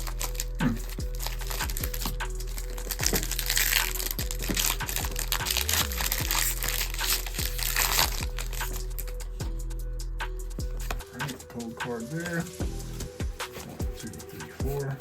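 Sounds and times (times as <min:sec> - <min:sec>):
foil wrapper crinkling: 0:00.0 - 0:09.2
background music with beat: 0:00.0 - 0:15.0.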